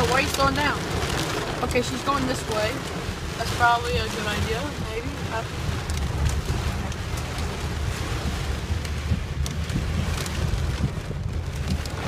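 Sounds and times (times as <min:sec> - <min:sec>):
heavy rain pelting a car: 0:00.0 - 0:12.0.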